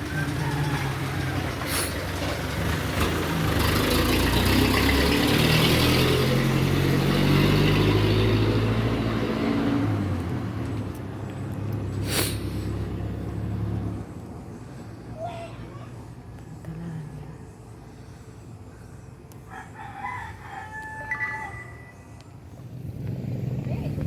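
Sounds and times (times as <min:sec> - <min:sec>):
car engine revving: 0:00.0 - 0:14.1, 0:22.5 - 0:24.0.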